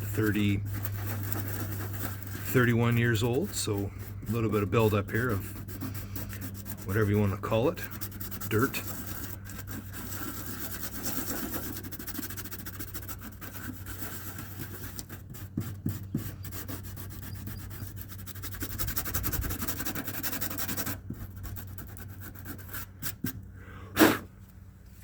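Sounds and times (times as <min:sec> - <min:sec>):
emery cloth rubbing on steel: 0:00.0 - 0:15.6.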